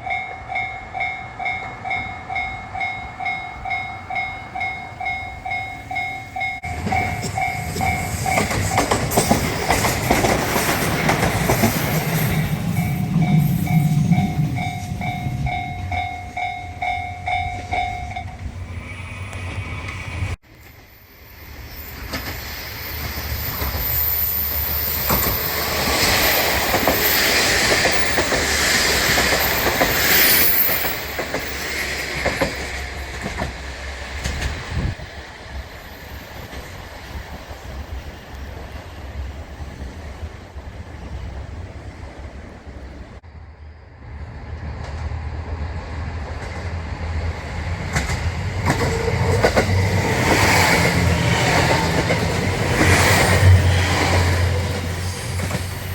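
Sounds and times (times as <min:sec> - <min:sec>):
wheels clattering on rails: 0:00.0 - 0:18.6, 0:21.8 - 0:35.3, 0:44.5 - 0:55.9.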